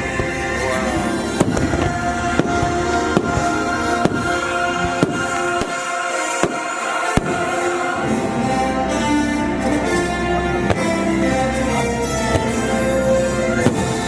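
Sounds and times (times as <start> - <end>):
fireworks bursting: 0.0 - 7.9, 10.7 - 11.1, 12.2 - 12.8, 13.4 - 14.0
music over loudspeakers: 0.0 - 14.0.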